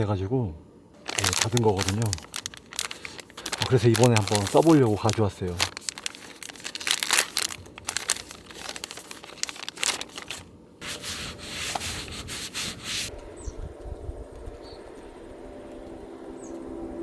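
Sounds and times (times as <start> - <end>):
plastic packet crinkling: 1.0 - 10.6
wet tissue rubbing: 1.0 - 13.1.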